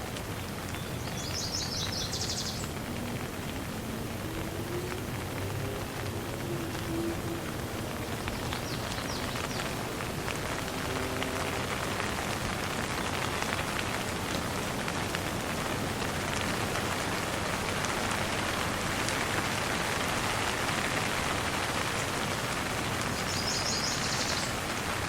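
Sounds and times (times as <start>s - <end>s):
light rain falling: 0.0s - 25.0s.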